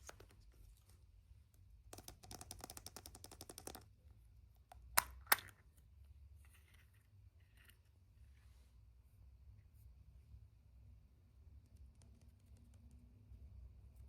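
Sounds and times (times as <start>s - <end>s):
plastic part snapping: 4.9s - 5.6s.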